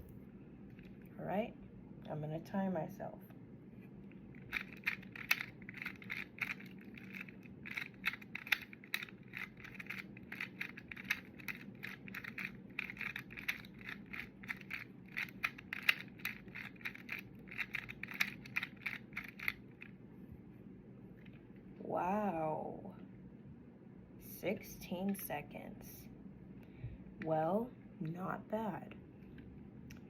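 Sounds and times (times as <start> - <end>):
puzzle cube plastic clicks: 4.3 - 19.9.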